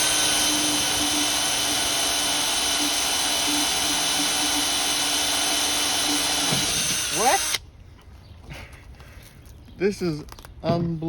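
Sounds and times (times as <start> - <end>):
drill boring into steel: 0.0 - 7.6.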